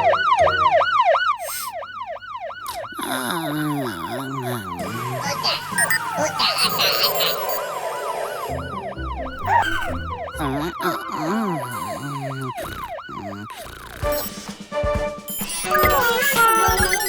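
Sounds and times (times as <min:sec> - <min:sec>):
background music: 0:00.0 - 0:01.2, 0:04.6 - 0:13.2, 0:13.8 - 0:17.0
fire truck siren yelping: 0:00.0 - 0:14.6, 0:15.2 - 0:17.0.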